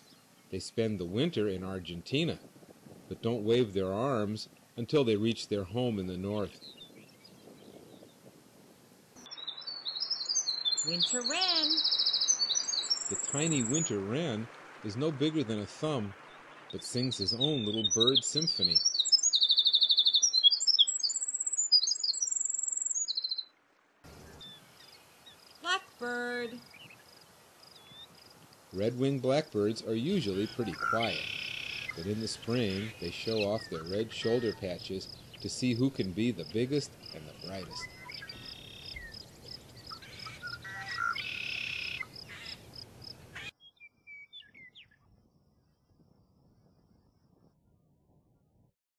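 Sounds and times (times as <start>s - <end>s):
faint background noise: 0.0s - 20.0s, 20.6s - 43.5s
wren singing: 9.2s - 14.0s, 16.2s - 23.5s, 24.1s - 29.0s, 29.7s - 45.0s
faint bird chirps: 9.2s - 15.0s, 15.7s - 23.5s, 29.5s - 45.4s.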